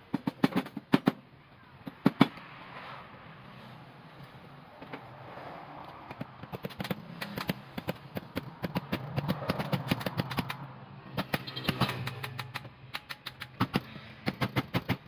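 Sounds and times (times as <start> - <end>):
sharp taps and clicks: 5.8 - 15.0.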